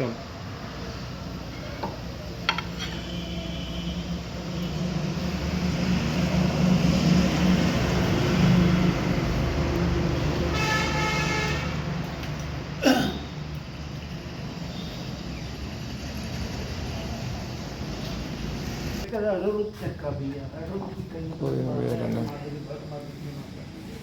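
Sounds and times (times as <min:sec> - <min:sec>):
vehicle engine rumble: 0:00.3 - 0:19.1
vehicle horn: 0:02.7 - 0:04.8, 0:10.2 - 0:11.9.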